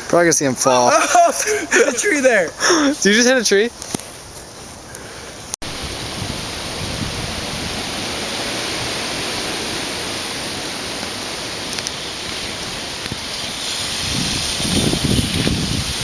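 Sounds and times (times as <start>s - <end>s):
strong wind on microphone: 5.6s - 11.6s, 12.3s - 16.0s.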